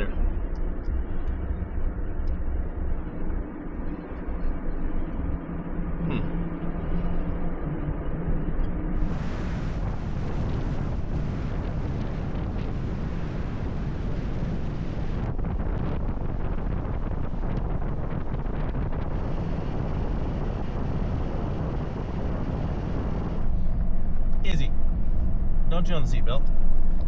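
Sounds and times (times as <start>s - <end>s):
wind buffeting microphone: 6.7s - 27.0s.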